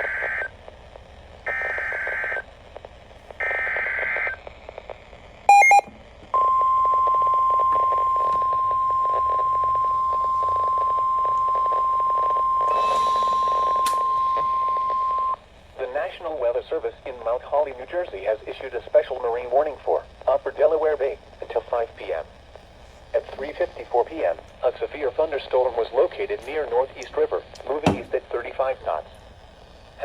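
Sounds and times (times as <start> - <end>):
crackly radio reception: 0.0 - 30.0
steady warning alarm tone: 5.5 - 15.4.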